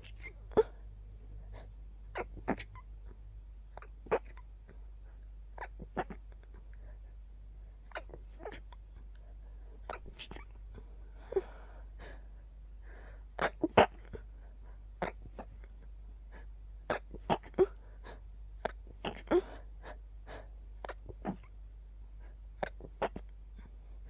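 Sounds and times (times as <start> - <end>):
stifled sneezes: 0.0 - 4.5, 5.6 - 6.6, 7.9 - 9.0, 9.7 - 11.5, 13.4 - 14.3, 15.0 - 15.8, 16.8 - 21.6, 22.6 - 23.7.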